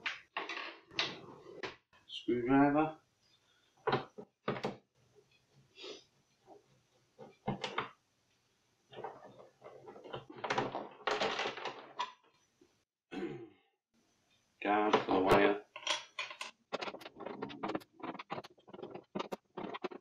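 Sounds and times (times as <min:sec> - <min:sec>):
rattling and scraping: 0:15.8 - 0:20.0
screwdriver knocking and scraping: 0:15.9 - 0:20.0.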